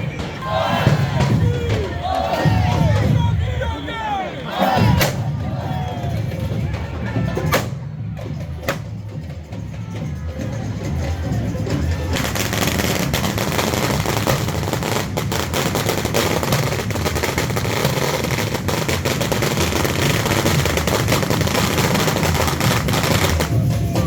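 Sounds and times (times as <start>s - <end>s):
firecrackers going off: 12.1s - 24.0s.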